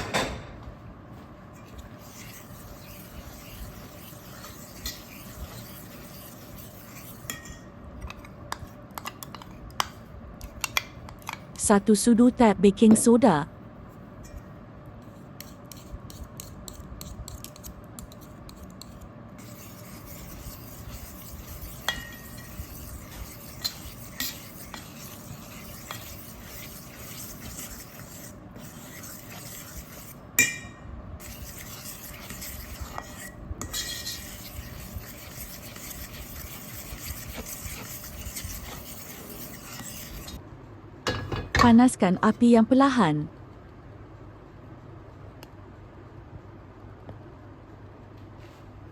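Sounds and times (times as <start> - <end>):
batter stirred in a bowl: 1.2 - 11.6, 13.8 - 30.5, 31.2 - 40.4
utensil clinking against bowl: 20.2 - 28.0.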